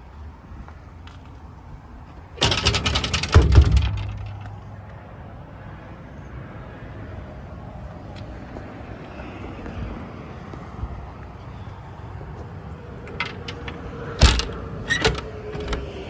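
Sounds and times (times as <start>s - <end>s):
metal door rattling: 2.4s - 4.8s, 12.7s - 16.0s
metal door slamming: 2.4s - 4.8s, 13.1s - 16.0s.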